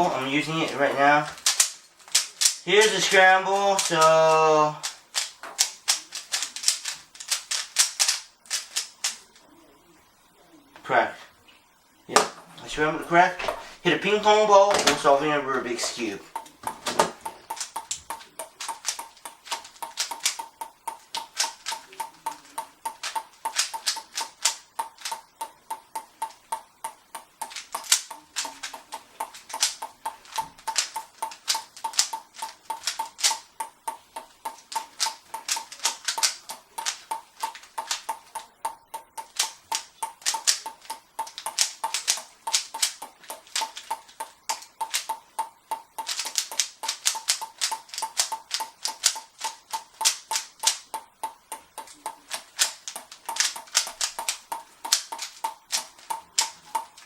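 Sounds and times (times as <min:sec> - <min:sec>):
ping pong ball bouncing on paddle: 0:16.3 - 0:56.9.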